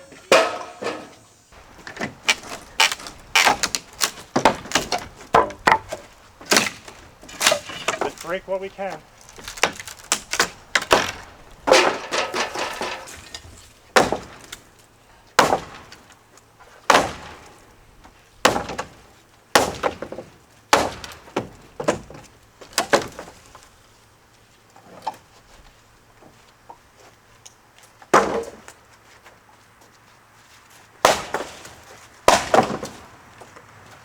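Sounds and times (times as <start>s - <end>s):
heavy blows on wood: 1.6s - 13.4s
wood cracking and rattling: 1.6s - 14.8s, 18.5s - 23.8s, 31.0s - 34.0s.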